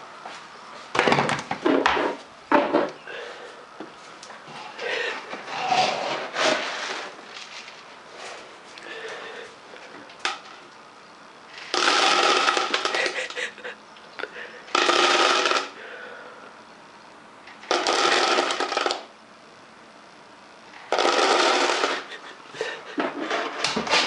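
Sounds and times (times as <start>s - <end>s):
dry dog food rattling in bowl: 17.6s - 19.0s.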